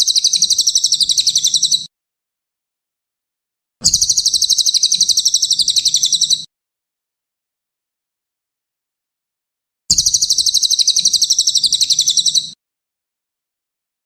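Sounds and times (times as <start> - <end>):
songbird high trill: 3.8 - 6.5, 9.9 - 12.6.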